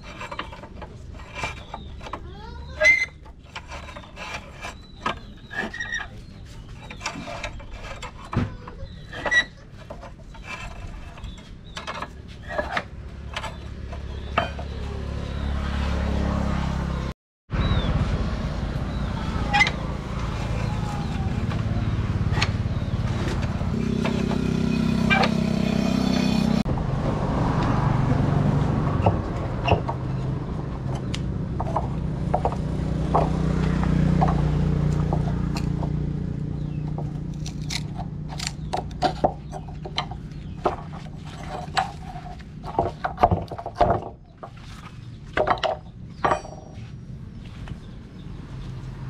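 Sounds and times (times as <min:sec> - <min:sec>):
knocks and scraping: 0:00.0 - 0:17.1, 0:18.1 - 0:49.0
metal taps and clinks: 0:45.4 - 0:46.8.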